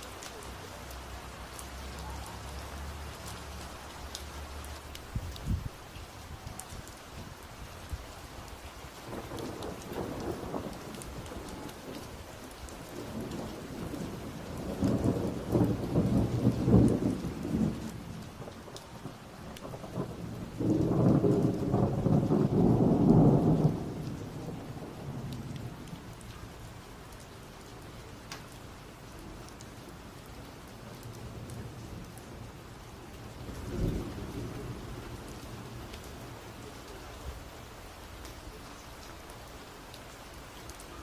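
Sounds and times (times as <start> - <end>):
steady rain: 0.0 - 41.0
thunder rolling: 9.1 - 12.1, 12.9 - 26.2, 33.2 - 35.8.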